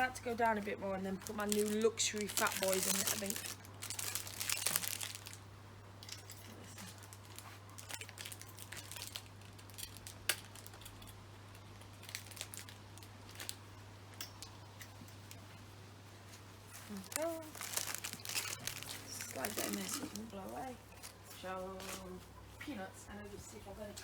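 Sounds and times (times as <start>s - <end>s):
clicks and rustles of handling: 0.0s - 5.4s, 6.0s - 24.0s
steady low hum: 0.0s - 24.0s
packaging crinkling: 0.3s - 5.5s, 6.1s - 13.7s, 16.8s - 22.0s.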